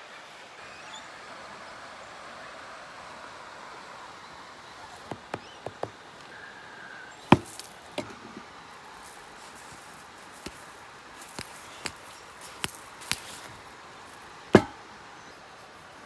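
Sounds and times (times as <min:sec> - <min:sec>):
campfire crackling and popping: 0:07.1 - 0:15.6.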